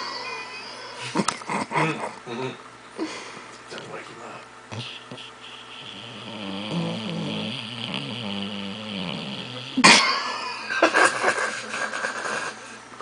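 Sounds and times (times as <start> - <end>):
dog breath bursts: 4.7 - 6.2
dog snoring: 4.7 - 10.0.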